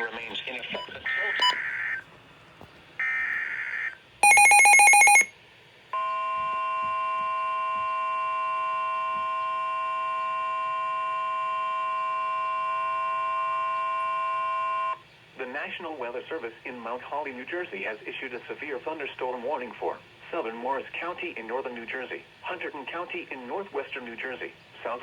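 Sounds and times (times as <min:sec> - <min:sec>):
steady warning alarm tone: 0:04.2 - 0:05.3, 0:06.0 - 0:15.0.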